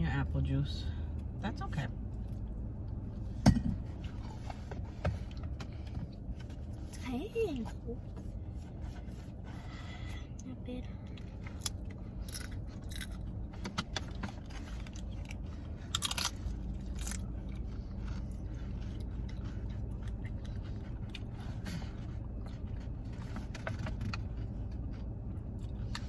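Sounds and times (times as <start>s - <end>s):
steady low hum: 0.0s - 26.0s
chewing crunchy chips: 11.2s - 13.4s, 14.0s - 26.0s.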